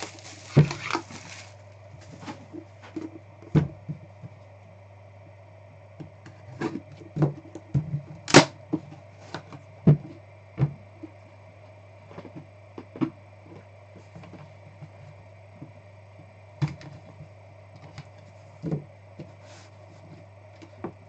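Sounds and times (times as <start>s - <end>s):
card packs being opened: 0.0s - 1.6s
low electrical hum: 0.0s - 21.0s.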